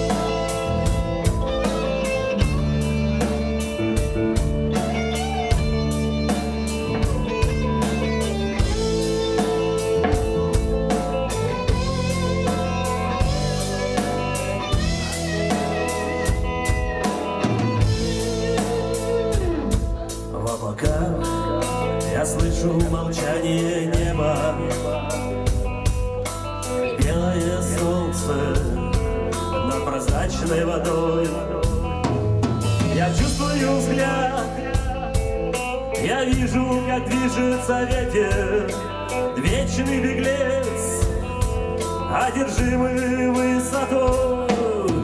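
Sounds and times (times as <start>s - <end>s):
drum beat: 0.0s - 23.4s
guitar: 0.0s - 45.0s.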